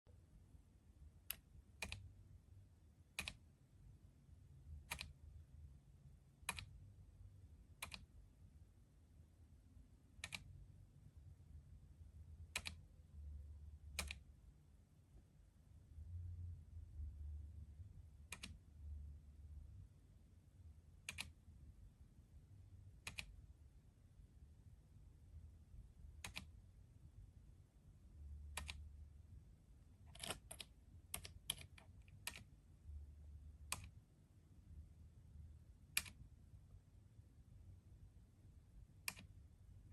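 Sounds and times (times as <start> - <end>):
faint low hum: 0.1 - 39.9
faint keyboard keystrokes: 1.2 - 2.0, 3.1 - 3.4, 4.8 - 5.2, 6.4 - 6.8, 7.8 - 8.1, 10.2 - 10.5, 12.5 - 12.8, 13.9 - 14.2, 18.3 - 18.6, 21.0 - 21.4, 23.0 - 23.4, 26.2 - 26.5, 28.5 - 28.8, 30.1 - 32.6, 35.9 - 36.2, 39.0 - 39.4
keyboard key clicks: 3.2 - 3.4, 26.2 - 26.5, 30.1 - 32.5.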